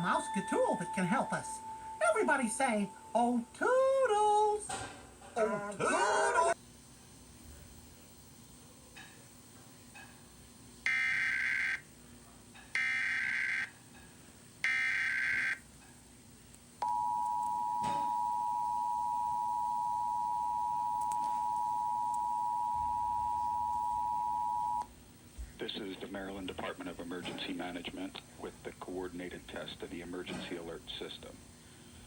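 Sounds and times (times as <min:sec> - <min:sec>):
two-tone attention signal: 0:16.8 - 0:24.8.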